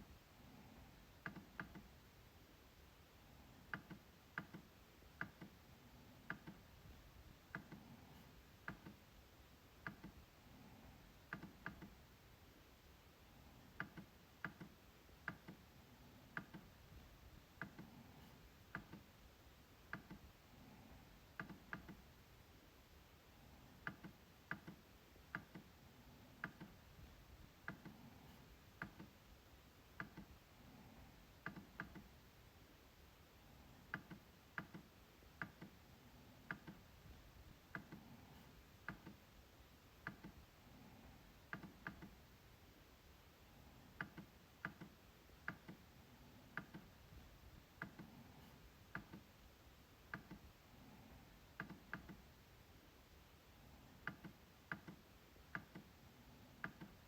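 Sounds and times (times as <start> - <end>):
trackpad clicking: 6.2 - 6.7.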